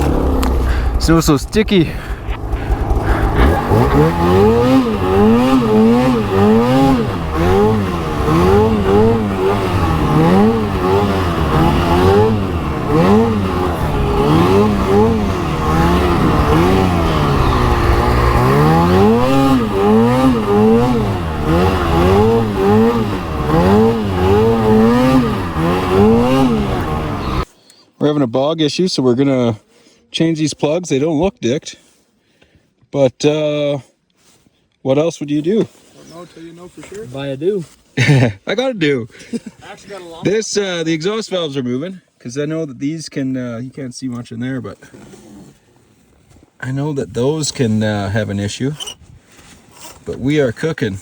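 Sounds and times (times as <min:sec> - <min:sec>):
snowmobile engine revving: 0:00.0 - 0:27.5.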